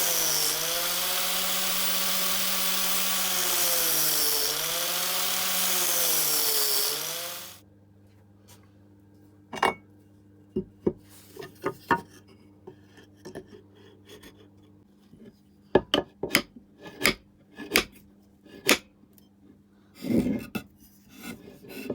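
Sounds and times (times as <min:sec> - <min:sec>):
power tool running: 0:00.0 - 0:07.6.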